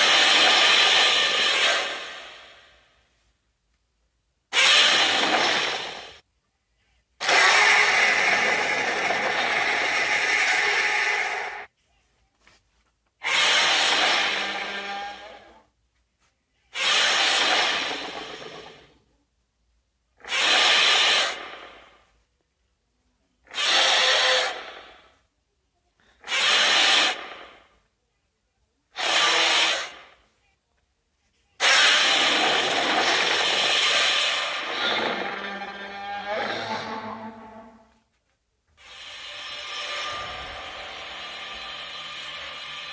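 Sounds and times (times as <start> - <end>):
harsh rasping monster roars: 31.6 - 37.8.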